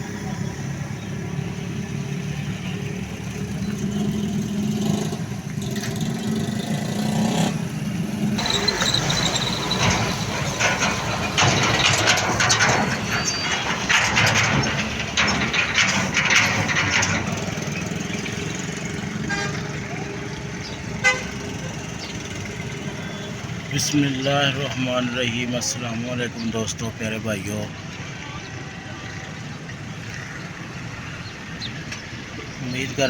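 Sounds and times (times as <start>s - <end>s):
passing vehicles rushing: 0.0s - 33.0s
vehicle engines humming: 0.0s - 33.0s
high-pitched squeal: 8.4s - 17.8s.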